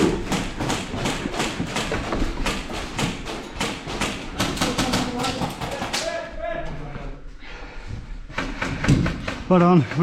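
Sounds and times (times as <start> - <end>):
airsoft guns firing: 0.0 - 6.1.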